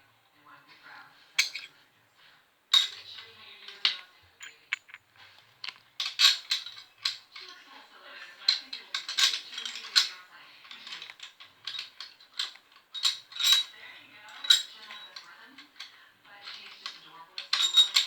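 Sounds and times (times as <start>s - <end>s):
metal tools clicking and clinking: 1.4s - 1.8s, 2.7s - 7.7s, 8.3s - 15.8s, 16.5s - 18.0s.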